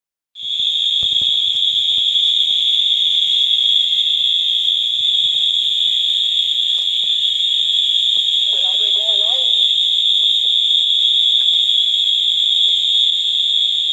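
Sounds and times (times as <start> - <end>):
fire alarm horns steady tone: 0.4 - 13.9.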